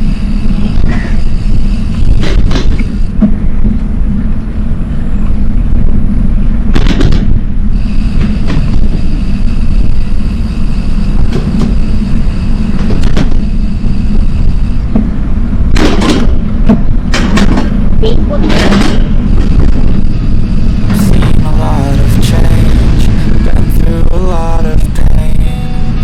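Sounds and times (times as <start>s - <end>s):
wind buffeting microphone: 0.0s - 24.0s
steady high-pitched tone: 7.6s - 15.6s, 19.6s - 26.0s.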